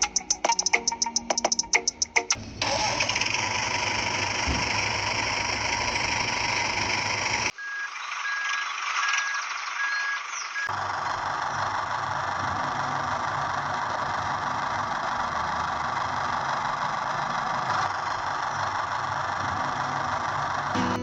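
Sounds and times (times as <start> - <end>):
music: 0.0 - 2.4, 20.8 - 21.0
faint high beeps: 7.6 - 10.7.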